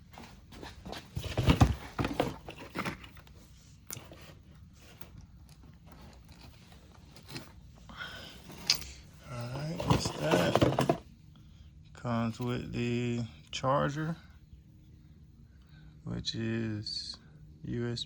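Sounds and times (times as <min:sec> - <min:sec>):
packaging crinkling and scraping: 0:00.6 - 0:07.7, 0:08.5 - 0:11.1.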